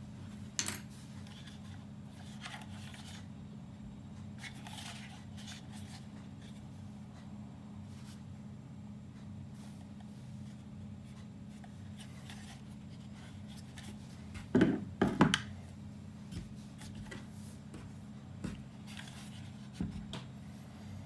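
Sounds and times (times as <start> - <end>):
steady low hum: 0.0 - 21.0
parts clattering: 0.5 - 0.9.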